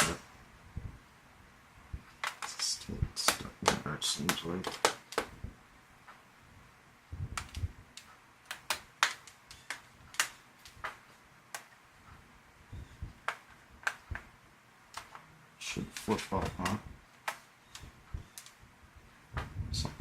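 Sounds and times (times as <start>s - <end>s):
laptop parts clicking and knocking: 2.1s - 5.4s, 7.3s - 11.8s, 12.8s - 14.3s, 14.9s - 15.3s, 15.9s - 18.6s.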